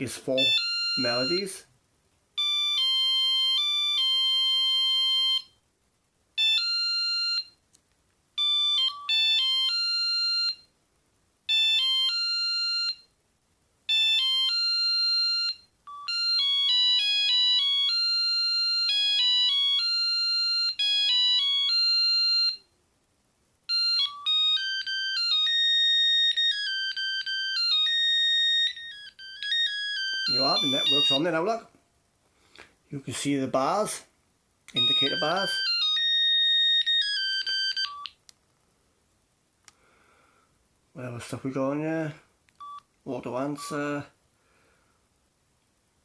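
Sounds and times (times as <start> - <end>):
beeping phone ringtone melody: 0.4 - 1.6, 2.4 - 5.5, 6.4 - 7.6, 8.4 - 10.7, 11.5 - 13.1, 13.9 - 22.6, 23.7 - 31.5, 34.8 - 38.2, 42.6 - 42.8.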